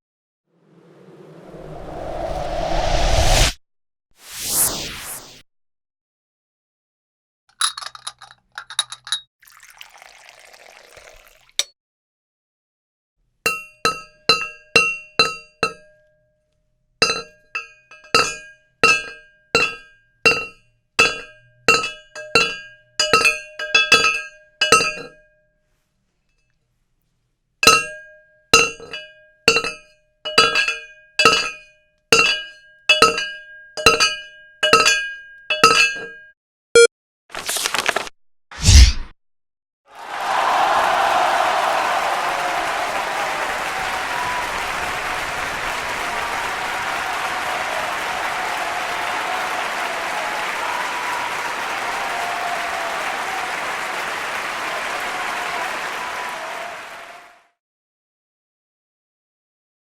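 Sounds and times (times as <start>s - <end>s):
short rattle: 7.5s - 9.2s.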